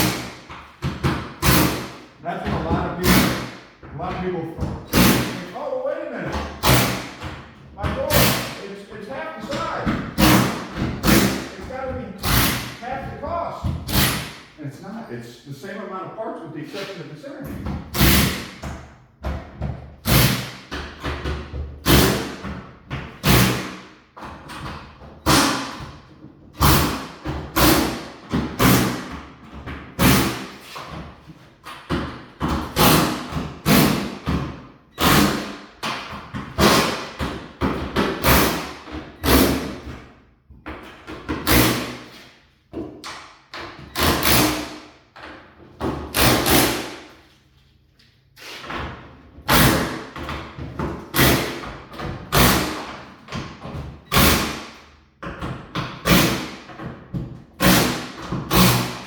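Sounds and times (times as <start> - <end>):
loud knocks and thuds: 0.0 - 14.6, 31.9 - 42.1.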